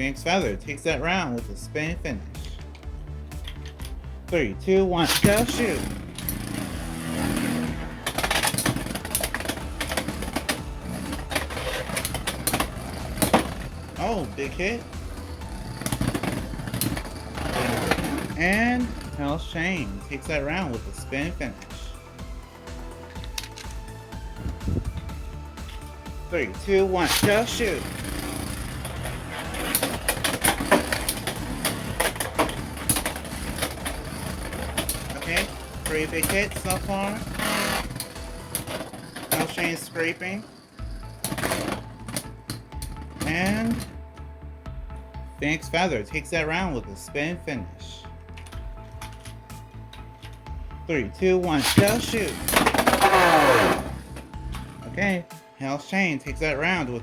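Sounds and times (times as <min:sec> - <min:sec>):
spinning tops whirring: 0:05.0 - 0:19.3, 0:26.6 - 0:43.9, 0:51.5 - 0:54.8.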